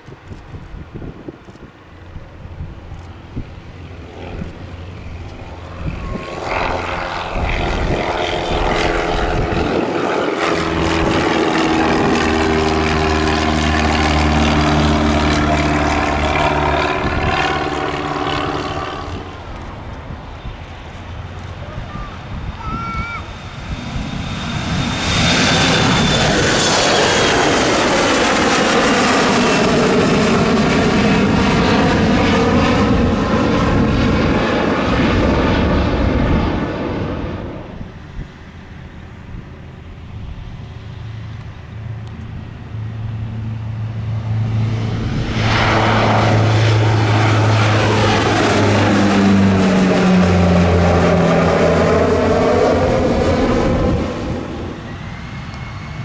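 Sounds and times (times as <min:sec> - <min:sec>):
jet engines roaring past: 0:00.0 - 0:56.0
turboprop propeller drone: 0:00.0 - 0:56.0.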